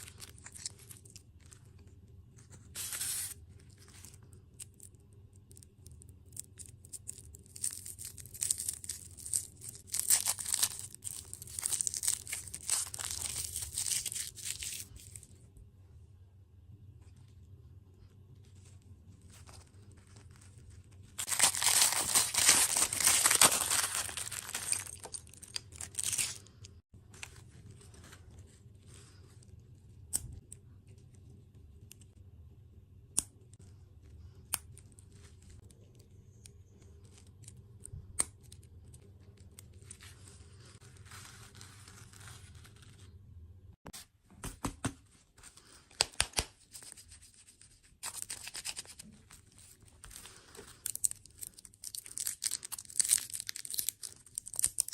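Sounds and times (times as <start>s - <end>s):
packaging tearing and crinkling: 0.0s - 1.2s, 2.8s - 4.0s, 6.3s - 15.2s, 21.2s - 26.6s, 48.0s - 49.1s, 50.1s - 54.9s.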